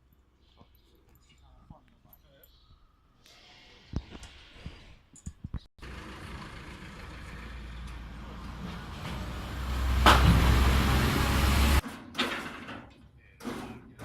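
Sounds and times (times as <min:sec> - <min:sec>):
concrete mixer machinery: 0:05.8 - 0:11.8.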